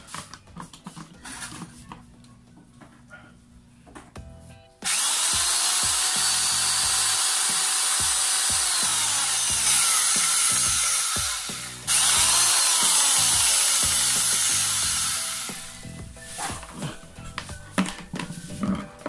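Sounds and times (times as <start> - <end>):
electric shear cutter whirring: 4.8 - 16.0.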